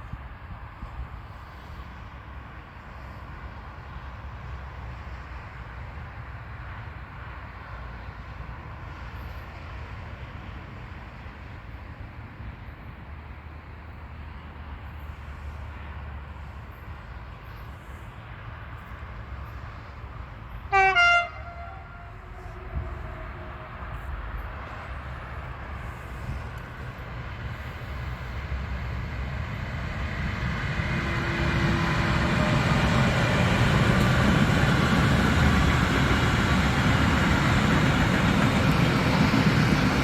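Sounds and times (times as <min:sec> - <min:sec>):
train rumbling: 0:00.0 - 0:40.0
train horn blast: 0:20.7 - 0:24.9.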